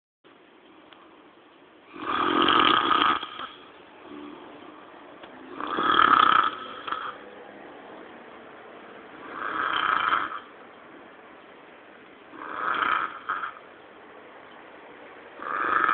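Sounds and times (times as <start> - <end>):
man snoring heavily: 1.9 - 4.4, 5.5 - 7.2, 9.2 - 10.5, 12.3 - 13.6, 15.4 - 15.9.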